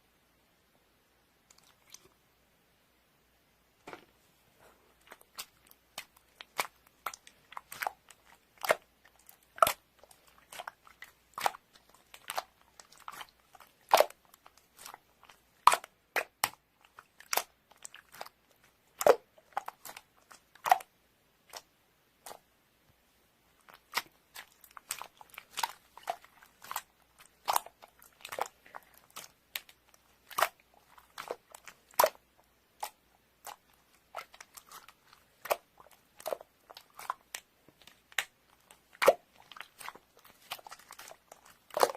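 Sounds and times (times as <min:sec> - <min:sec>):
crisp food crunching: 0:05.0 - 0:20.9, 0:23.6 - 0:41.9.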